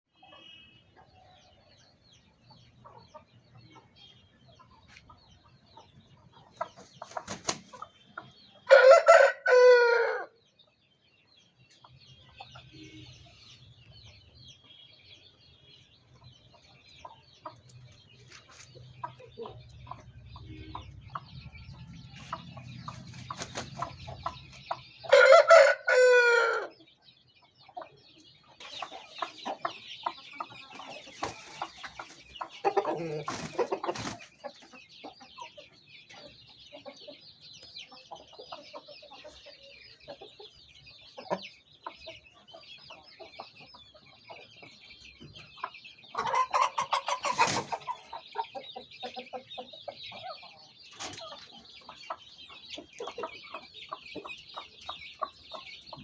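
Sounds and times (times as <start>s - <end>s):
rooster crowing: 8.7s - 10.3s, 25.1s - 26.7s
soft clucking: 28.6s - 40.6s, 45.2s - 56.0s.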